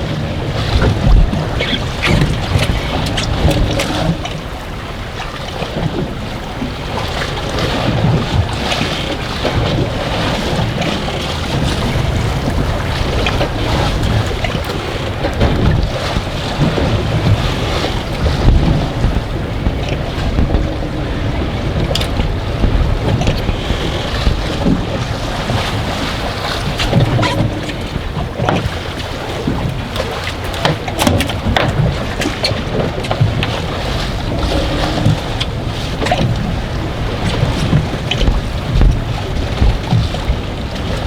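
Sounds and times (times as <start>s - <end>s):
waves slapping boat hull: 0.0s - 41.0s
wind buffeting microphone: 0.0s - 41.0s.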